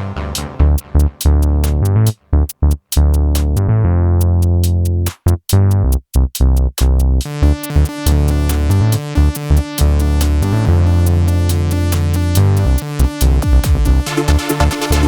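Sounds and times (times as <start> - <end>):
electronic music with drum machine: 0.0 - 3.6, 7.2 - 15.0.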